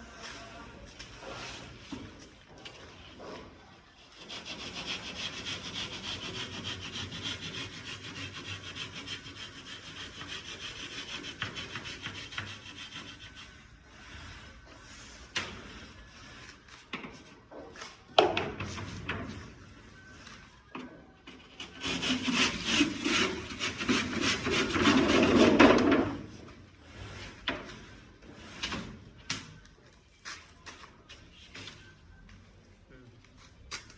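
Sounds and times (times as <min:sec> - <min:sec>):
hand saw cutting gypsum board: 0:21.6 - 0:26.0.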